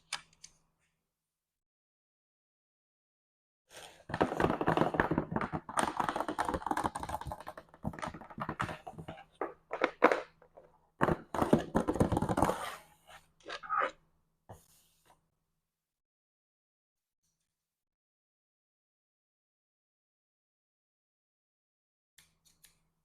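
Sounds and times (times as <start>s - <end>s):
fingers tapping on packaging: 4.1s - 10.2s.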